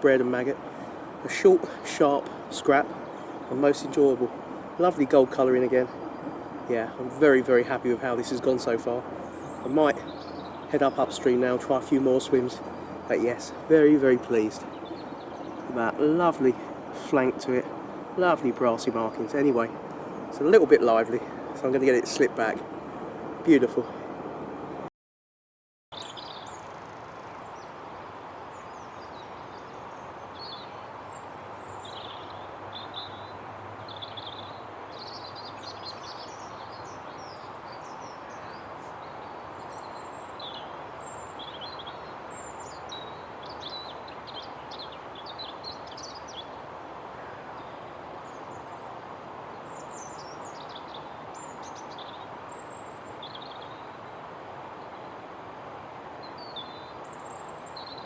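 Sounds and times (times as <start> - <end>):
small birds chirping: 0.0 - 24.6, 25.9 - 58.0
steady rushing noise: 0.0 - 24.9.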